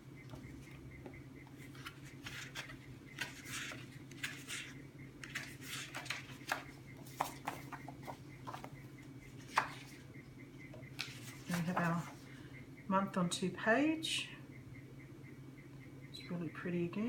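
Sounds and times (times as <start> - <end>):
steady low hum: 0.0 - 17.0
paper rustling: 1.6 - 8.7, 9.4 - 10.0, 10.9 - 12.2.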